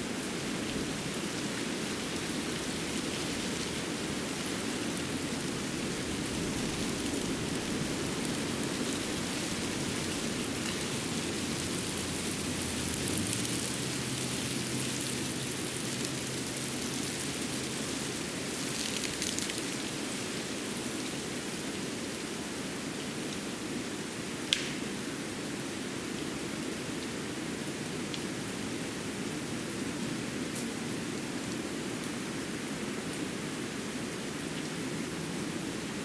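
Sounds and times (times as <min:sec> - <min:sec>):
patter of dripping water: 0:00.7 - 0:22.2, 0:24.5 - 0:24.8.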